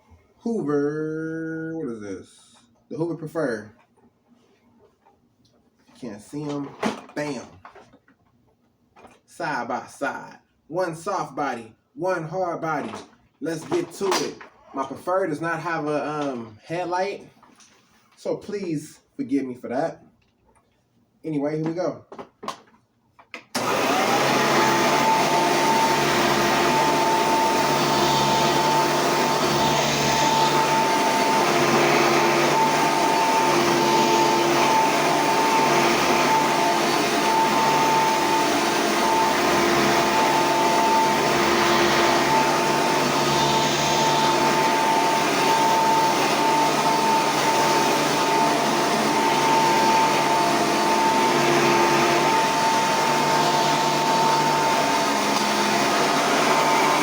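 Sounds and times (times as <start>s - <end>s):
vacuum cleaner motor whine: 23.5s - 57.0s.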